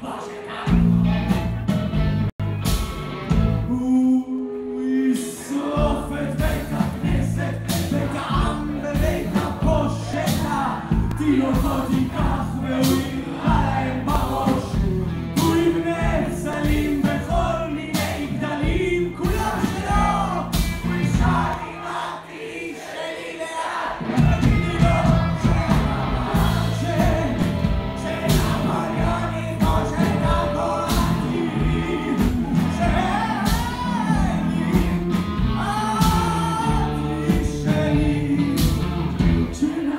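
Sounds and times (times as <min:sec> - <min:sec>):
band playing live: 0:00.1 - 0:04.7, 0:05.4 - 0:22.0, 0:23.8 - 0:39.9
person singing: 0:03.6 - 0:20.4, 0:24.1 - 0:38.9.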